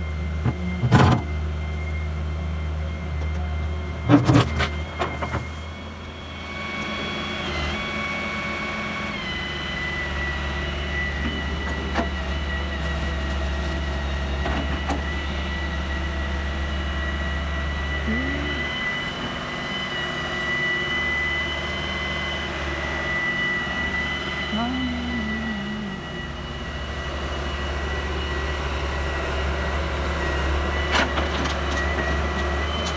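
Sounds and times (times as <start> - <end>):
diesel engine running: 0.0 - 32.9
high steady whine: 16.6 - 32.9.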